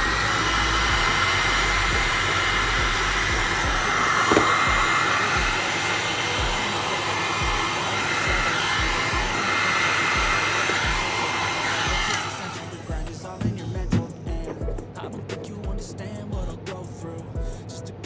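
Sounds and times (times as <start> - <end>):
hot-air blower rushing: 0.0 - 14.2
hip-hop beat with kick drum: 0.0 - 18.0.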